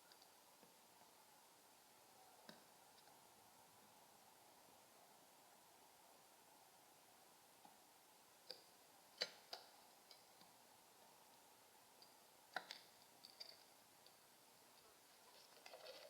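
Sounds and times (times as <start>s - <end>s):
faint clicks and taps: 2.4s - 3.2s, 12.0s - 16.0s.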